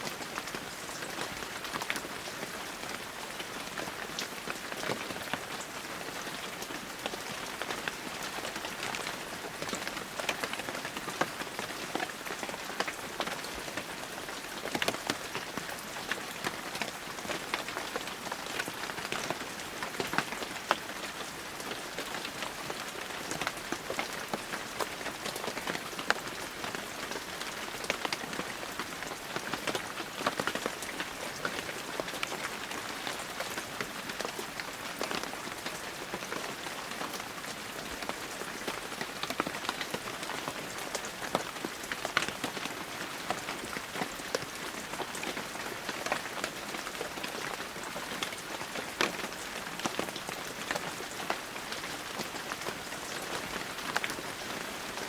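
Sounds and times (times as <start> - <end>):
heavy rain falling: 0.0 - 55.0
raindrops pattering close by: 0.0 - 55.0.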